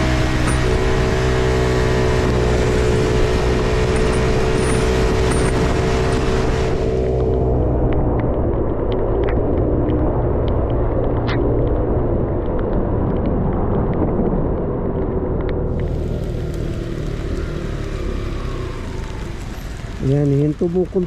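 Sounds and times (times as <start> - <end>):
scooter engine running: 0.0 - 7.0
wind rumble on microphone: 0.0 - 21.0.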